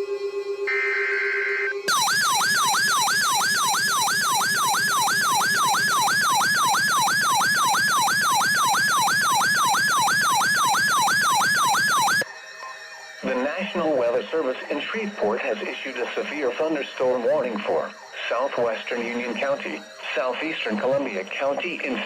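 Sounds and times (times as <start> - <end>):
electronic alarm siren: 0.0 - 12.4, 15.6 - 20.8.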